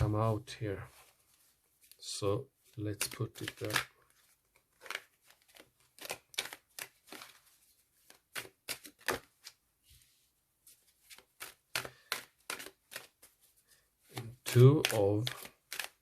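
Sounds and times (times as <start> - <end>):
cards clicking and sliding on table: 2.9 - 10.1, 10.7 - 16.0.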